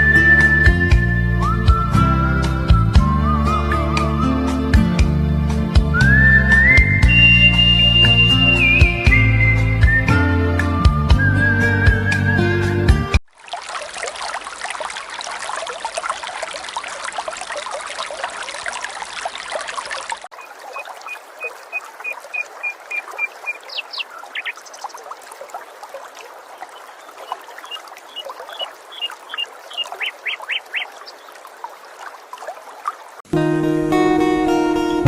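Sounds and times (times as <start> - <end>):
water trickling and splashing: 6.2 - 10.0, 13.2 - 33.4
bird calling: 20.3 - 25.2, 26.2 - 31.5.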